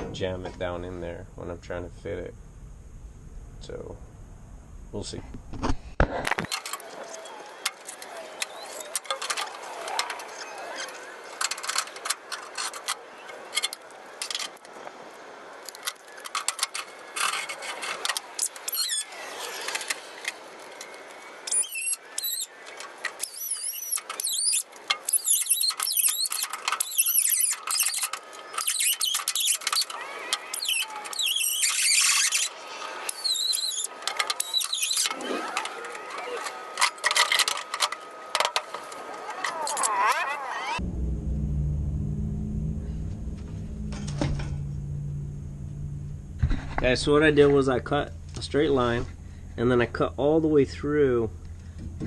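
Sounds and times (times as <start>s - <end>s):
metal squealing: 23.2s - 37.8s, 39.2s - 49.7s.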